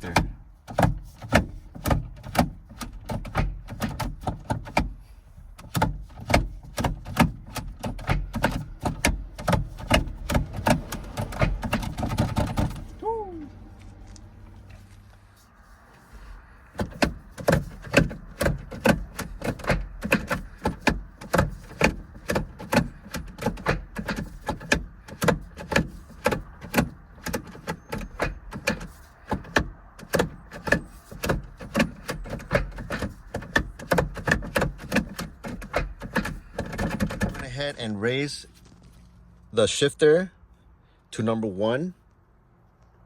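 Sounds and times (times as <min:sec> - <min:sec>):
mechanical clicks and clunks: 0:00.0 - 0:13.0, 0:16.6 - 0:37.7.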